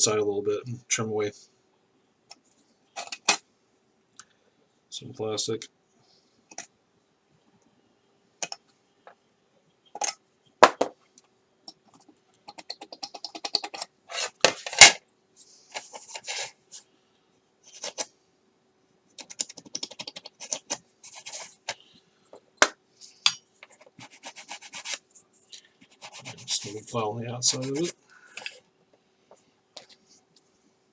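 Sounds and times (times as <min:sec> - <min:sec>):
knife scraping plastic: 0:12.7 - 0:15.0, 0:15.7 - 0:16.6, 0:20.0 - 0:21.8, 0:23.2 - 0:25.0.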